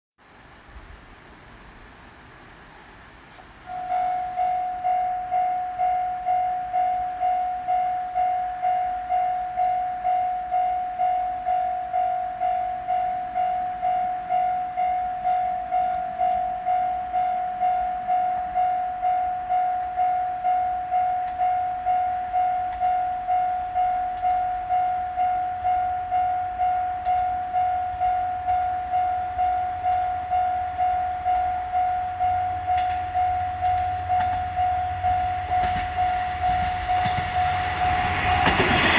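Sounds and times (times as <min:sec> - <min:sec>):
low rumble: 0:29.6 - 0:38.9.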